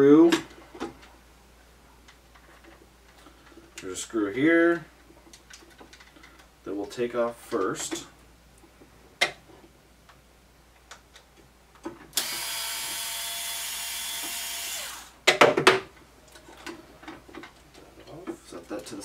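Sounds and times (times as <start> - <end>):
power screwdriver running: 12.2 - 15.2.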